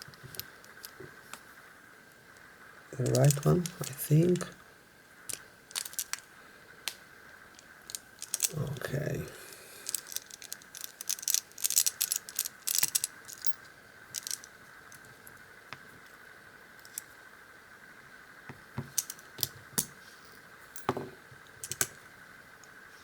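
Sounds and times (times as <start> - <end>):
padlock clicks and scrapes: 3.0 - 4.5, 5.3 - 6.3, 7.6 - 8.9, 9.8 - 13.6, 14.2 - 14.6.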